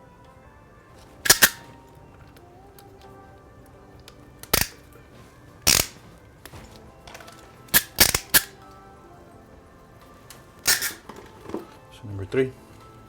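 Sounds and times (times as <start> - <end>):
crimping tool snapping: 1.2 - 3.1, 4.0 - 8.7, 10.3 - 11.3.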